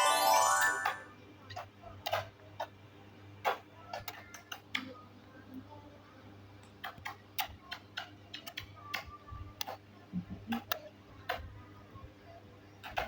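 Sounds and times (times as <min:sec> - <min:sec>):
faint baby voice: 0:03.4 - 0:13.0.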